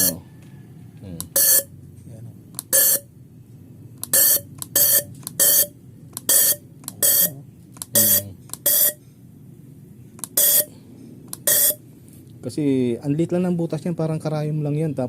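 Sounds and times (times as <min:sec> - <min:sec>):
fuel injector spraying with buzz: 0:01.3 - 0:01.7, 0:02.6 - 0:03.1, 0:04.0 - 0:09.0, 0:10.2 - 0:10.7, 0:11.3 - 0:11.8.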